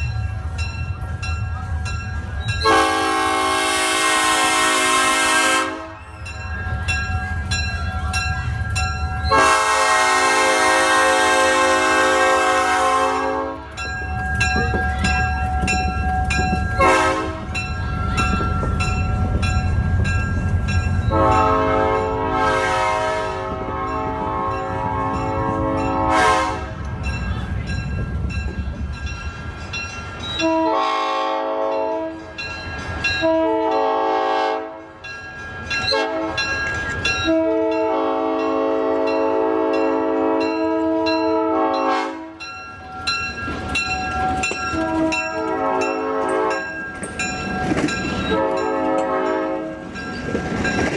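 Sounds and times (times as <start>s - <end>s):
low rumble of train: 0.0s - 50.9s
locomotive horn blasts: 2.6s - 6.0s, 9.3s - 13.8s, 16.8s - 17.6s, 21.1s - 26.8s, 30.4s - 32.3s, 33.2s - 34.9s, 35.9s - 36.5s, 37.2s - 42.5s, 44.7s - 46.8s, 48.3s - 49.9s.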